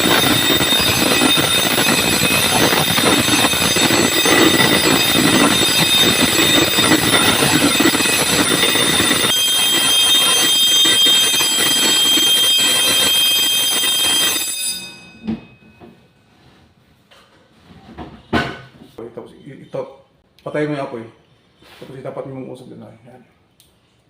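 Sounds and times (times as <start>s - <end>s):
fire alarm ringing: 0.0s - 16.1s
high steady tone: 0.0s - 16.1s.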